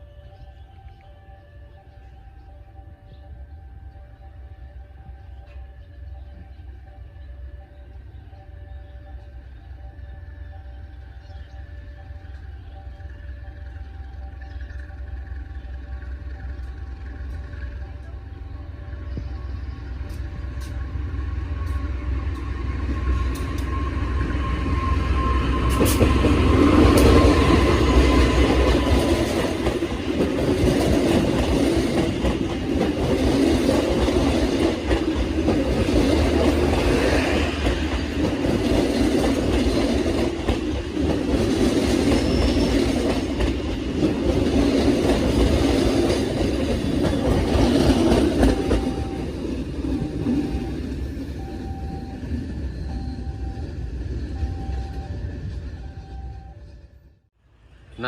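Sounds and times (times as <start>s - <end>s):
locomotive engine rumble: 0.0s - 57.1s
train wheels clattering: 25.5s - 50.6s.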